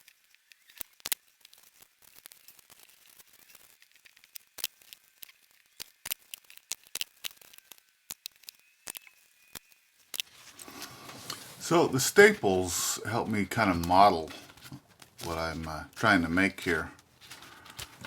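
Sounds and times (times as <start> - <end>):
webbing rustling: 10.2 - 18.0.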